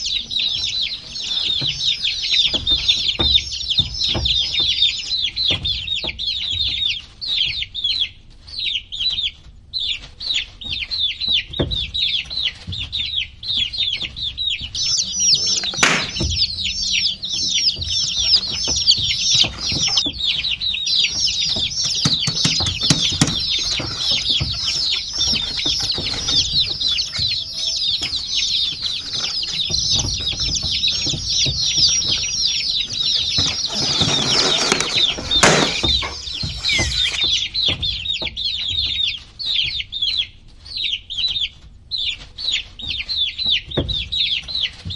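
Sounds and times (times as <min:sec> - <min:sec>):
baby chicks peeping: 0:00.0 - 0:44.9
sharp knocks: 0:14.8 - 0:20.1, 0:21.0 - 0:37.8.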